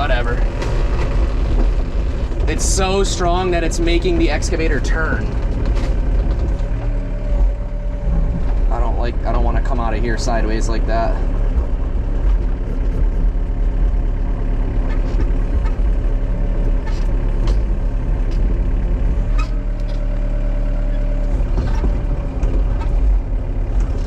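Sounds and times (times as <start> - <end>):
excavator diesel engine under load: 0.0 - 24.0.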